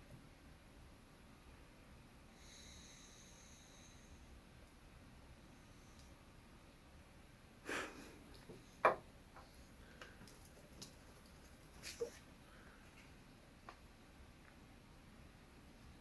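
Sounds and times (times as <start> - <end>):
paper rustling: 10.4 - 12.2.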